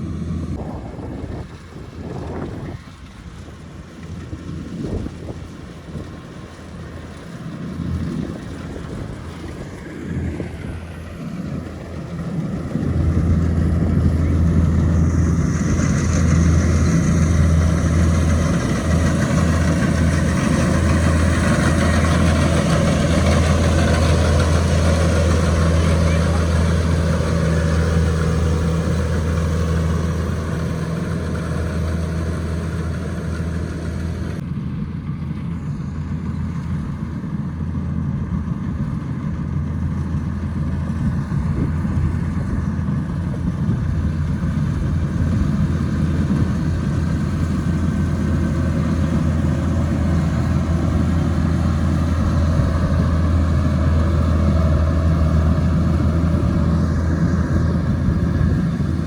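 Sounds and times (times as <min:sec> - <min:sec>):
combine harvester engine drone: 0:00.0 - 0:59.0.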